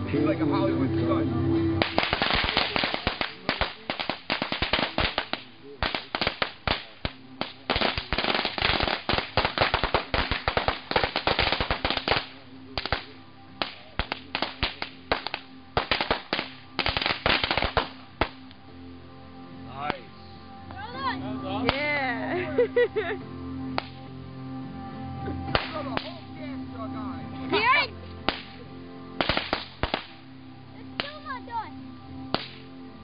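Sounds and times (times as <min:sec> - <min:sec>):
firecrackers cracking: 0:01.8 - 0:18.6, 0:21.6 - 0:22.0, 0:23.7 - 0:24.1, 0:25.5 - 0:26.3, 0:28.2 - 0:30.3, 0:30.9 - 0:31.4, 0:32.3 - 0:32.8.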